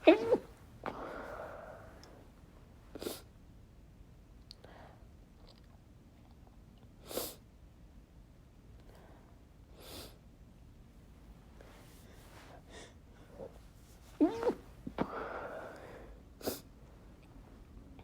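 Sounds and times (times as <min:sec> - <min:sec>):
stifled sneezes: 0:00.0 - 0:01.5, 0:14.1 - 0:15.5.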